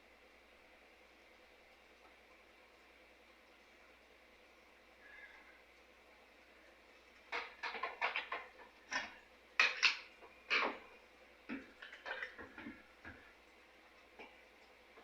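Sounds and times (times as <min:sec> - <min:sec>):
clattering of small parts and tools: 0:07.3 - 0:10.9, 0:11.5 - 0:13.2.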